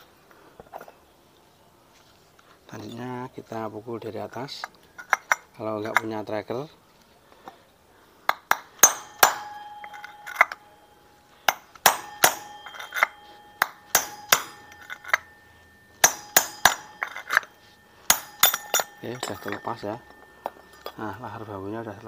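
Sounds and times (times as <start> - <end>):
hammer striking metal: 8.5 - 21.7.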